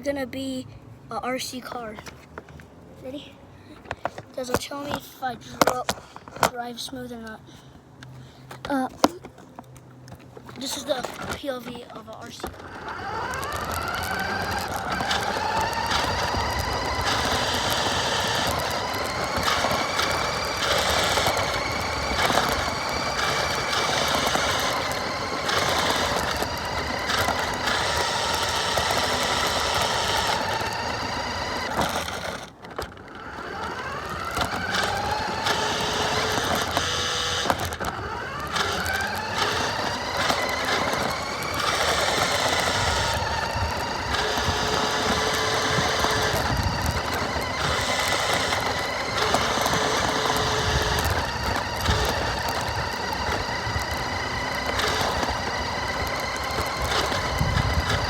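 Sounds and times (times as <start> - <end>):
toy car motor whining: 3.8 - 7.5, 10.5 - 58.0.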